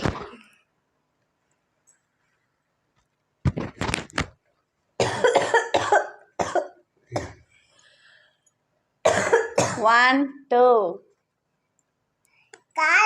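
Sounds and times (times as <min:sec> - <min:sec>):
person coughing: 0:05.0 - 0:07.4, 0:09.1 - 0:09.8.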